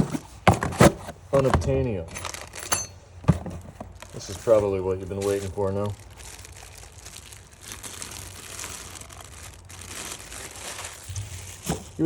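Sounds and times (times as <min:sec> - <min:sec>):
packaging crinkling: 0:02.1 - 0:02.7, 0:03.6 - 0:12.0.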